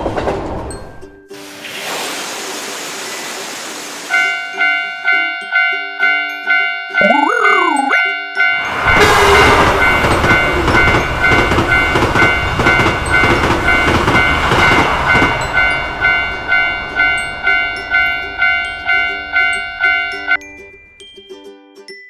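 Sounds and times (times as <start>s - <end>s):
level crossing bell dinging: 7.0s - 8.0s
train rattling over crossing: 8.6s - 20.0s.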